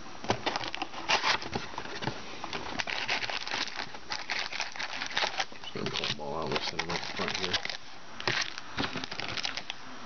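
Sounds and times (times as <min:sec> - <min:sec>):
foil packs crinkling: 0:00.3 - 0:09.8.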